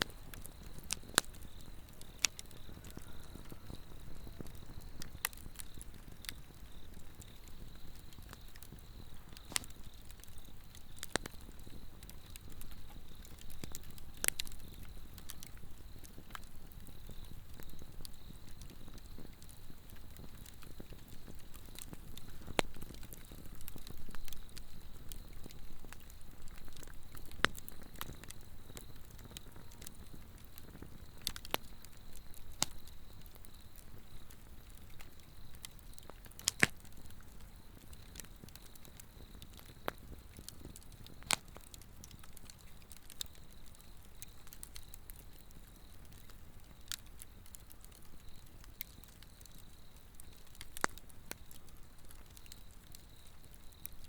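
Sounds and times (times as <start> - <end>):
log fire crackling and popping: 0.0 - 54.0.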